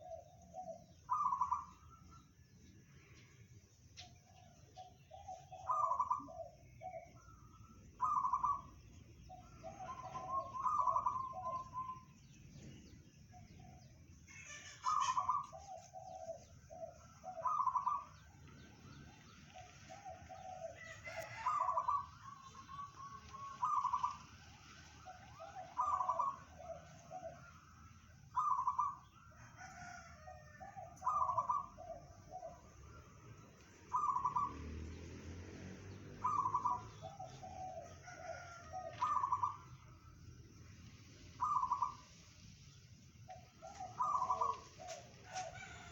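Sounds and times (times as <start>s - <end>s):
dove cooing: 0.0s - 2.1s, 4.7s - 12.1s, 13.4s - 33.1s, 33.8s - 34.8s, 36.2s - 39.8s, 41.2s - 42.4s, 43.3s - 45.9s
small birds chirping: 0.0s - 45.9s.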